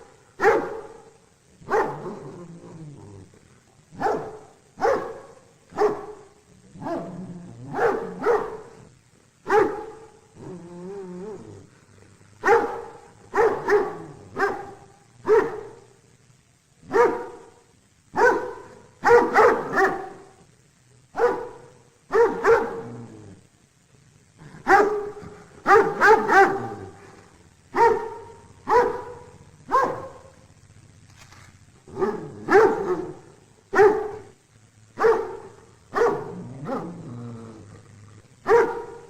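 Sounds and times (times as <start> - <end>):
dog barking: 0.4 - 2.2, 3.9 - 10.1, 12.4 - 15.9, 16.8 - 20.3, 21.1 - 22.9, 24.6 - 27.0, 27.7 - 30.4, 31.9 - 34.3, 35.0 - 37.0, 38.4 - 39.0.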